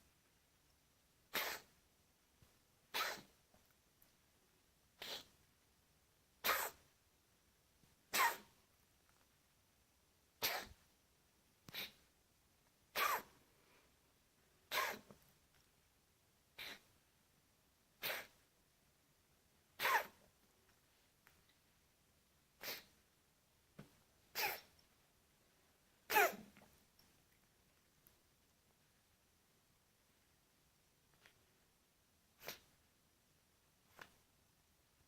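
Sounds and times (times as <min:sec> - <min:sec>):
pet coughing: 0:01.3 - 0:01.7, 0:02.9 - 0:03.4, 0:05.0 - 0:05.3, 0:06.4 - 0:06.8, 0:08.1 - 0:08.6, 0:10.4 - 0:10.8, 0:11.7 - 0:12.0, 0:12.9 - 0:13.4, 0:14.7 - 0:15.2, 0:16.6 - 0:16.9, 0:18.0 - 0:18.4, 0:19.8 - 0:20.3, 0:22.6 - 0:22.9, 0:24.3 - 0:24.8, 0:26.1 - 0:26.6.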